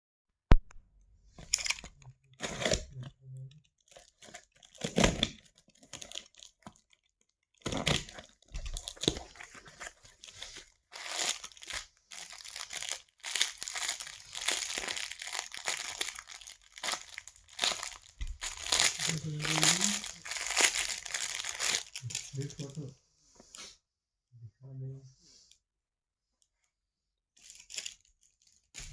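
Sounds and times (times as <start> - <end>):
packaging tearing and crinkling: 1.4 - 3.1, 3.9 - 22.9, 27.4 - 28.9.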